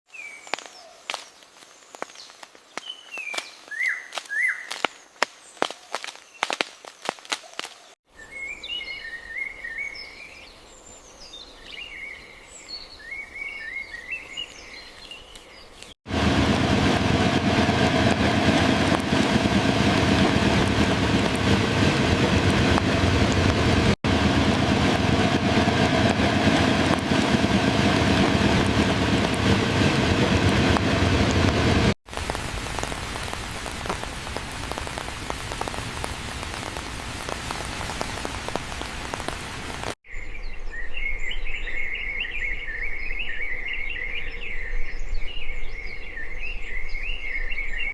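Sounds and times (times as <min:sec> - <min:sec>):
rain rushing: 0:16.1 - 0:40.0.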